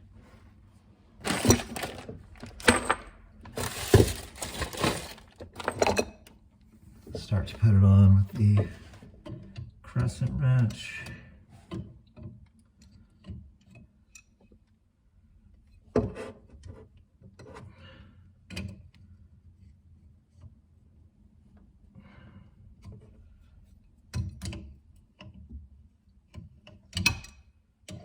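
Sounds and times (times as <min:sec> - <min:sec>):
handling rustle: 0:01.2 - 0:05.9.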